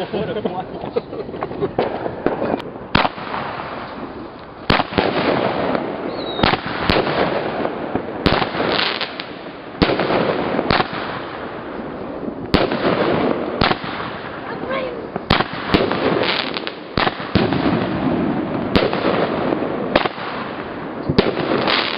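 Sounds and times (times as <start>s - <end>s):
fireworks bangs: 0.0s - 21.9s
fireworks crackling: 0.0s - 21.9s
high whistle: 6.1s - 6.5s.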